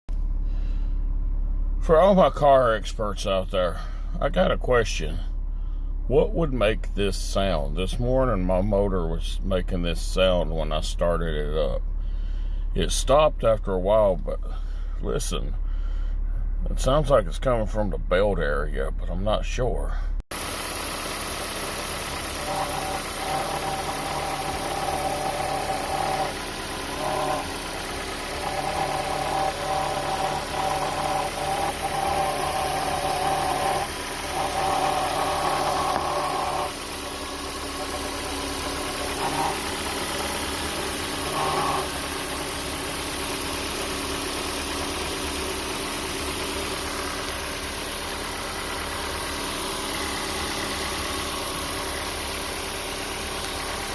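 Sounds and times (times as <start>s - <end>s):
car engine idling: 0.1s - 53.9s
whining tone: 20.4s - 45.5s.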